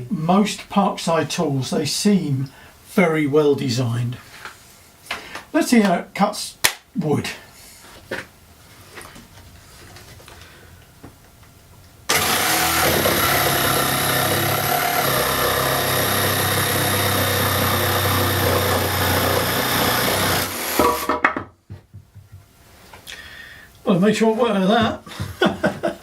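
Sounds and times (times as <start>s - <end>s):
faint handling sounds: 7.5s - 10.6s
jigsaw cutting through wood: 12.1s - 21.1s.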